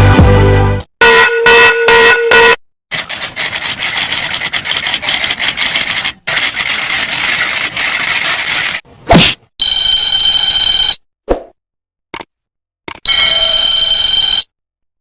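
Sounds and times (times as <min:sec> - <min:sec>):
rasping scraping sound: 0:02.9 - 0:08.9.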